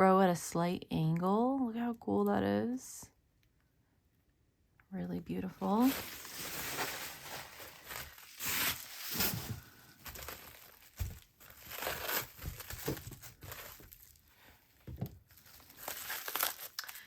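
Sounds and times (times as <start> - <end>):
packing material crinkling: 5.6 - 17.0.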